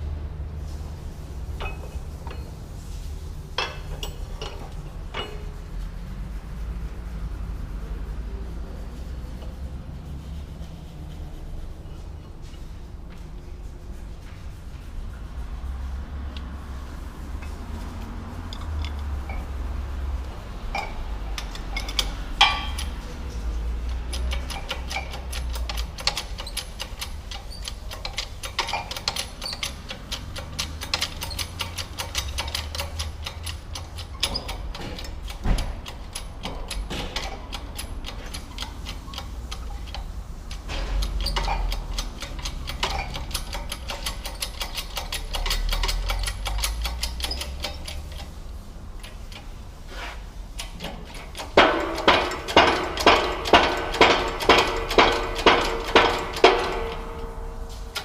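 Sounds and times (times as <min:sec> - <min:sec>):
ratchet wrench clicking: 0:20.7 - 0:49.7, 0:50.5 - 0:58.0.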